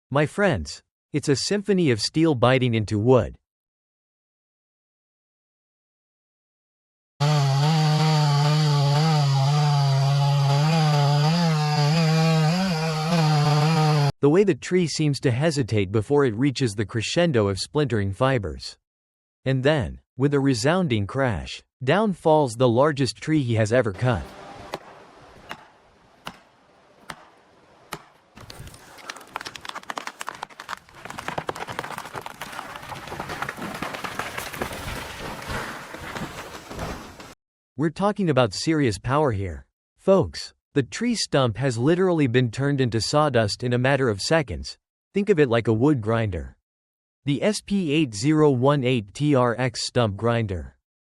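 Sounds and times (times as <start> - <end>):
chainsaw cutting tree trunk: 7.2 - 14.1, 24.2 - 37.4
sharp knocks: 24.7 - 28.6
dense crackling of small impacts: 28.0 - 37.4.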